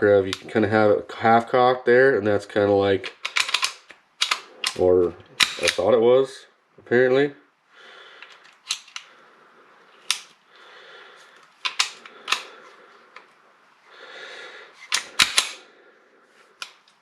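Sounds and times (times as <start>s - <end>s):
pistol action clicking: 3.1s - 4.8s, 8.4s - 9.1s, 10.1s - 10.3s, 11.6s - 12.6s, 14.9s - 15.6s.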